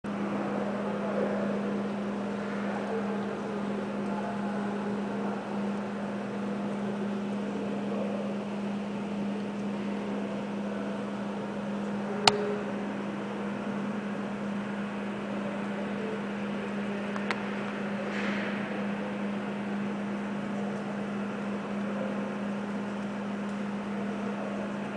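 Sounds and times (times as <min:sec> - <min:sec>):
low mechanical hum: 0:00.0 - 0:24.9
sharp click: 0:12.2 - 0:12.6.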